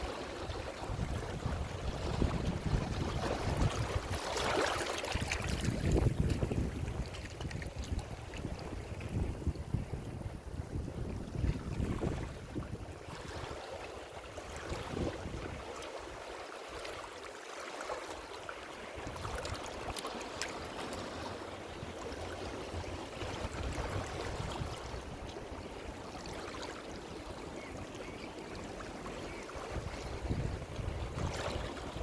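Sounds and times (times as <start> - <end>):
ocean waves surf: 0.0 - 5.8
wind rumble on microphone: 0.0 - 13.7, 14.4 - 15.7, 19.0 - 19.9, 21.8 - 26.5, 29.6 - 32.0.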